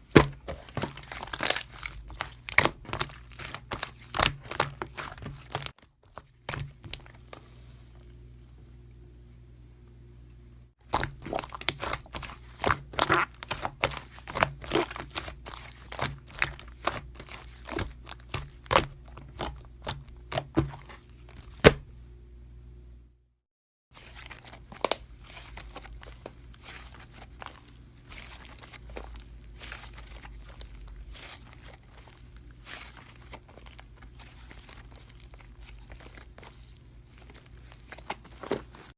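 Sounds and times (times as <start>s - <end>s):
soft dense crinkling: 24.0s - 38.9s.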